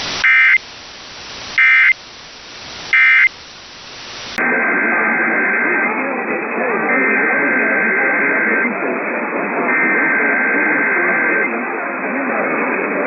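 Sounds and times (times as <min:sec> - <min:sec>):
static hiss: 0:00.0 - 0:04.5
muffled radio feed: 0:01.4 - 0:02.0, 0:02.6 - 0:13.0
warbling data tones: 0:04.4 - 0:13.0.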